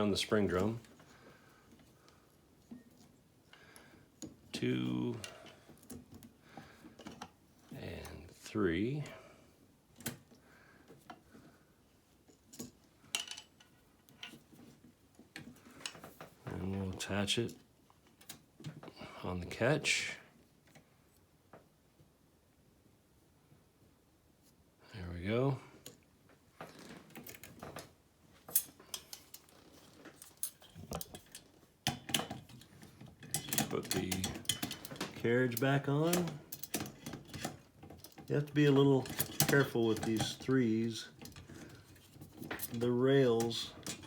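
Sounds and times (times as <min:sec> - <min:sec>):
typewriter parts clicking and rattling: 0:30.1 - 0:44.0.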